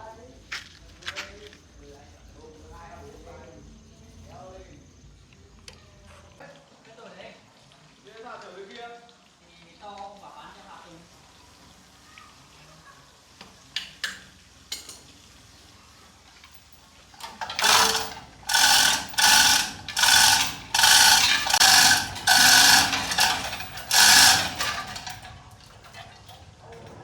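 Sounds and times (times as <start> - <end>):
ratchet wrench clicking: 17.2 - 26.0.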